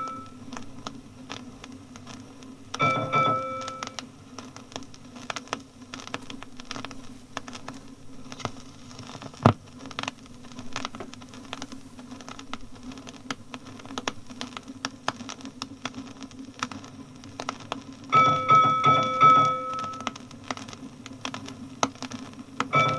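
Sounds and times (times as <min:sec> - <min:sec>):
record surface crackle and clicks: 0:00.0 - 0:22.9.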